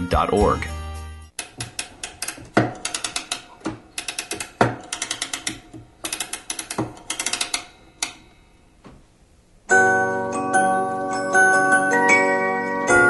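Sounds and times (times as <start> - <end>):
ratchet-like mechanical clicking: 1.4 - 8.2.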